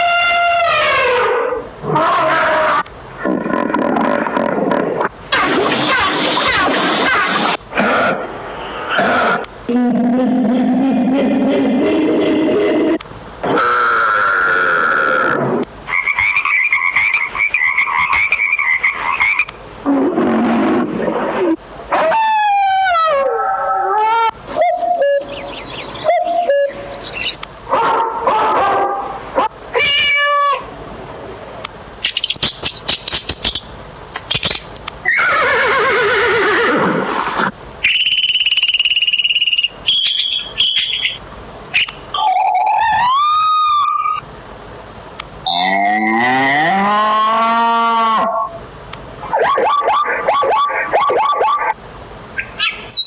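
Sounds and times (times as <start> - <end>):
animal and bird calls: 15.9 - 19.5, 24.5 - 27.4, 32.0 - 36.0, 37.8 - 43.1, 52.4 - 53.0.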